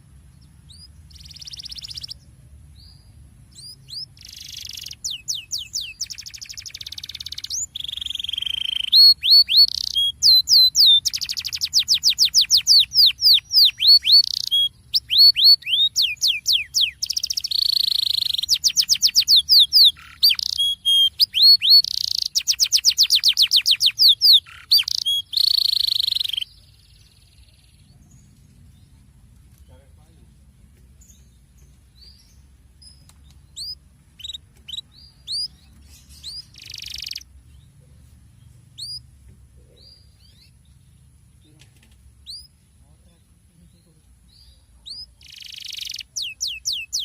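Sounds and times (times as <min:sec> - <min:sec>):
canary singing rapid trills: 0:00.6 - 0:02.2, 0:02.8 - 0:27.9, 0:32.2 - 0:37.8, 0:38.6 - 0:39.1, 0:44.3 - 0:47.0.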